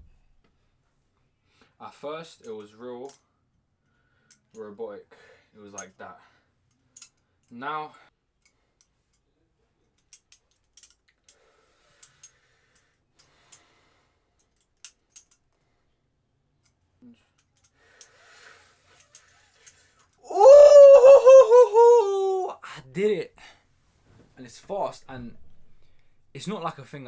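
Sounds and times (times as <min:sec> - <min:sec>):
loud voice: 0:20.3 - 0:22.5.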